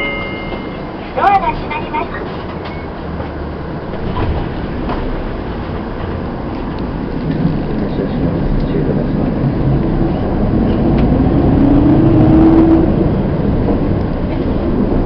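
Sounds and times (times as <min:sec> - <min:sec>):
bus engine low rumble: 0:00.0 - 0:15.0
rising whine: 0:08.4 - 0:15.0.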